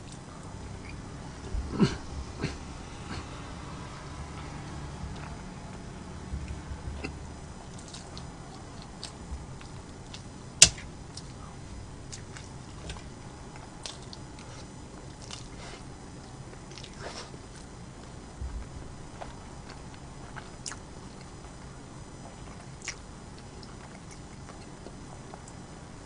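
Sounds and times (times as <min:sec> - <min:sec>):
chewing with wet mouth clicks: 0:04.3 - 0:11.5, 0:12.1 - 0:15.6, 0:16.2 - 0:18.2, 0:19.1 - 0:21.6, 0:22.2 - 0:25.6.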